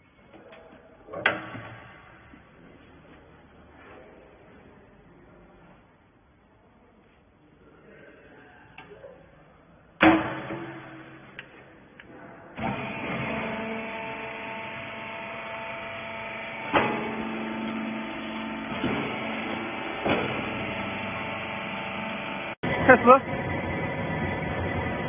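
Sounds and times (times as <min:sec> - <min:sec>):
loud metal clang: 0:10.0 - 0:11.5
motor and hydraulic pump humming: 0:12.6 - 0:25.0.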